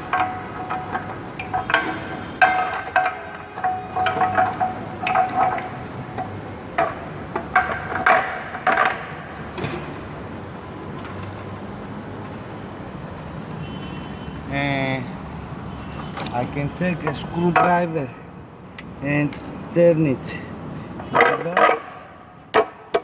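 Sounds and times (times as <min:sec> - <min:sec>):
metal tools clinking: 0:00.0 - 0:06.9
faint steady background noise: 0:00.0 - 0:23.0.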